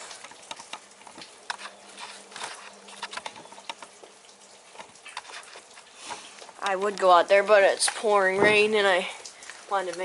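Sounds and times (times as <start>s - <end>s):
rain pattering: 0.0s - 10.0s.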